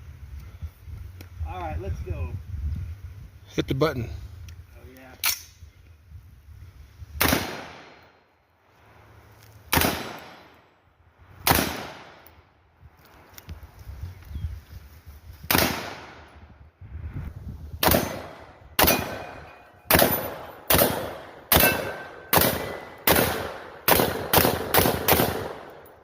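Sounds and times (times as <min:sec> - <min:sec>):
rifle shots with ringing echo: 0:07.2 - 0:08.2, 0:09.7 - 0:10.6, 0:11.4 - 0:12.4, 0:15.5 - 0:16.3, 0:17.8 - 0:26.0.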